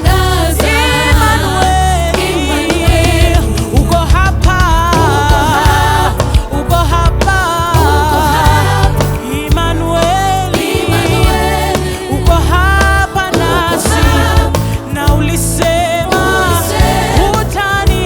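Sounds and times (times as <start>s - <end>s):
gospel song with band: 0.0s - 18.0s.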